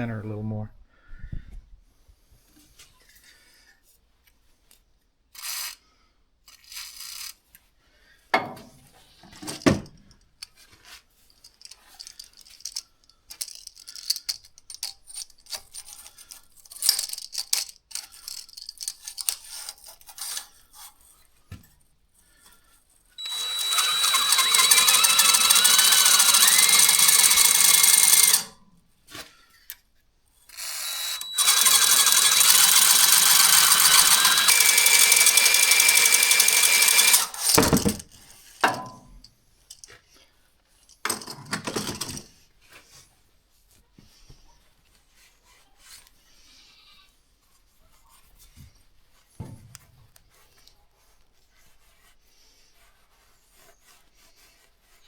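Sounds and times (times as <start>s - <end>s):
drill spinning with high whine: 23.2s - 28.6s, 30.5s - 38.0s.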